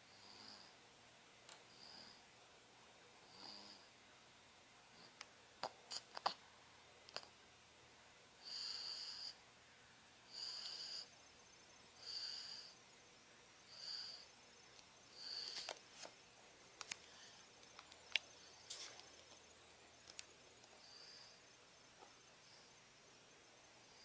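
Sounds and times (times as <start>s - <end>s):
baby snoring softly: 3.3s - 3.9s, 8.4s - 9.4s, 10.3s - 11.1s, 12.0s - 12.8s, 13.7s - 14.3s, 15.2s - 15.7s.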